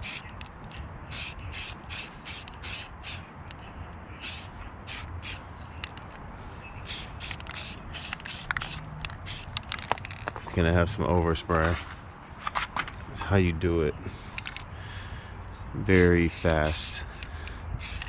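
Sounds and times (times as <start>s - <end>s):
aerosol spray hissing bursts: 0.0s - 0.2s, 1.1s - 3.2s, 4.2s - 5.4s, 6.9s - 9.5s, 15.9s - 17.0s, 17.8s - 18.0s.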